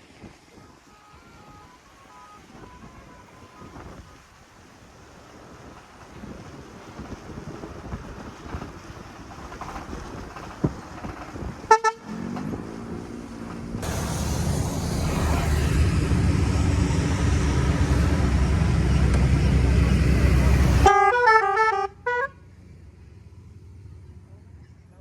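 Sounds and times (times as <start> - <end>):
multi-tone car horn melody: 0.6 - 4.0, 11.7 - 12.1, 20.8 - 22.4
vehicle rumble: 1.4 - 25.0.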